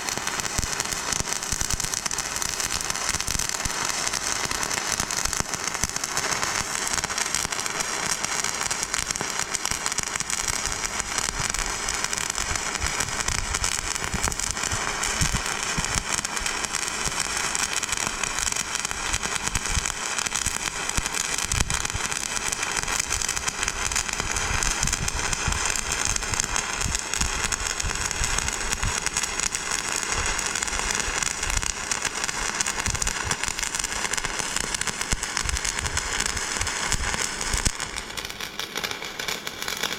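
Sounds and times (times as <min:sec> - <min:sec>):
welding arc crackling: 0:00.0 - 0:39.9.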